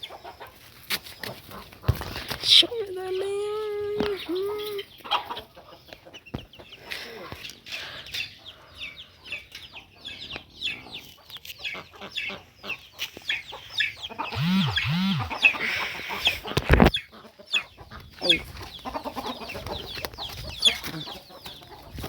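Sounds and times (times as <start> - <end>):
chickens clucking: 0.0 - 22.0
high peeping calls: 8.1 - 21.7.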